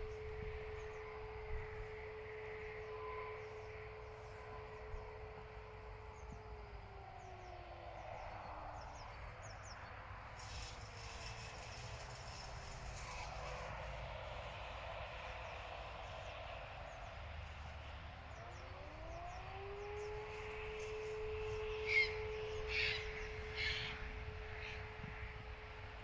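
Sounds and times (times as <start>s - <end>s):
distant siren: 0.0s - 26.0s
bird calling: 18.5s - 25.0s.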